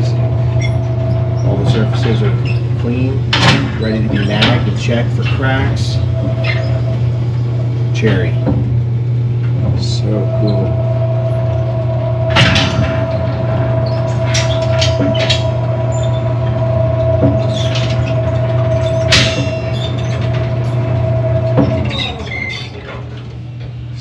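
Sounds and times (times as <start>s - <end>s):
metal clanks and knocks: 0.0s - 7.1s, 8.0s - 8.8s, 9.4s - 23.8s
machine whine: 0.0s - 24.0s
machinery humming: 0.0s - 24.0s.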